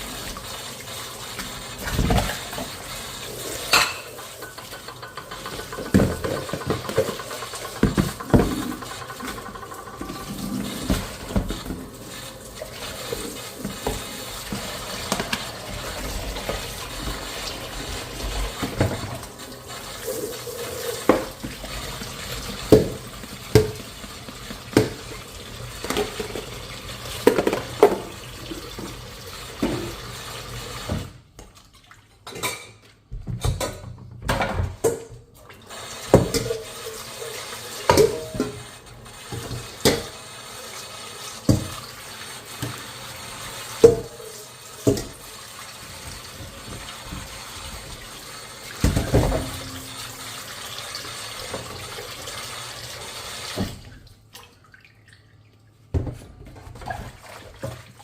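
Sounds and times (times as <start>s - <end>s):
tap water running: 0.0s - 58.0s
dishes clinking together: 3.7s - 7.1s.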